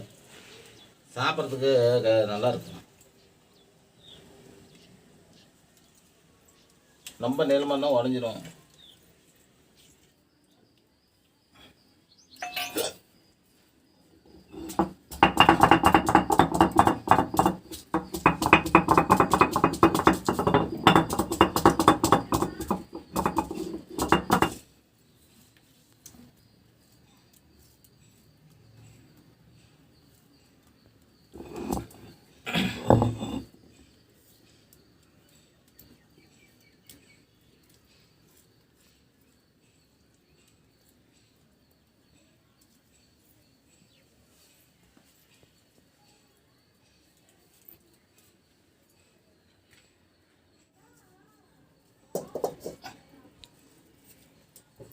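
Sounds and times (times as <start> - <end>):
metal utensil clattering on steel dish: 12.4 - 13.0.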